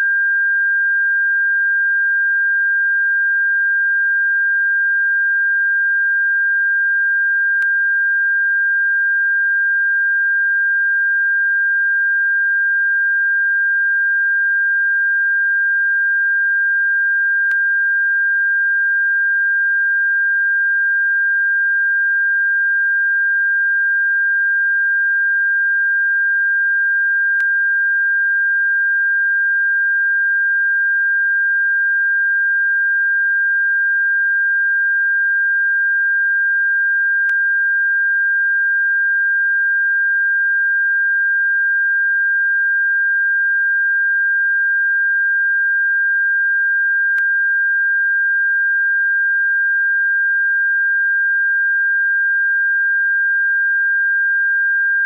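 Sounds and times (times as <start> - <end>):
high pitched sine tone: 0.0 - 55.0
faint click: 37.2 - 37.4, 47.1 - 47.3.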